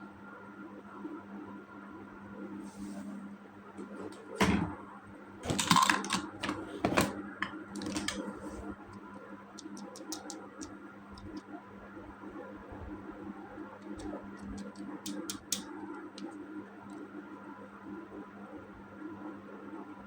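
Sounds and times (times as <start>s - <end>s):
plastic toy clicks and taps: 9.6s - 11.4s, 13.9s - 15.7s.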